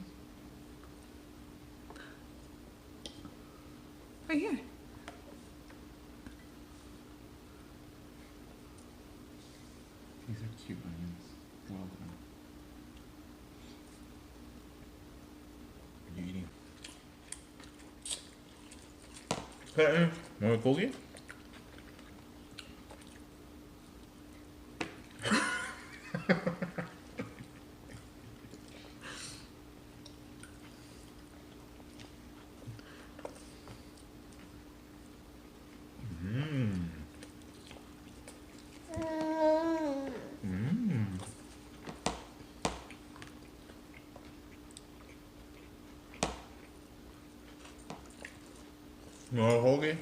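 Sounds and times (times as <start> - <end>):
faint steady hum: 0.0 - 50.0
baby chewing: 37.1 - 40.4, 41.1 - 49.3.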